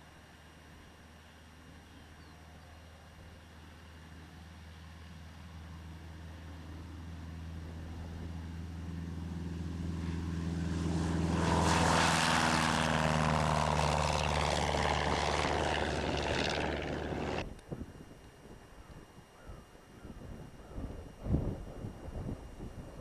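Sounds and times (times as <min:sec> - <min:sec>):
propeller airplane flying past: 0:00.0 - 0:17.6.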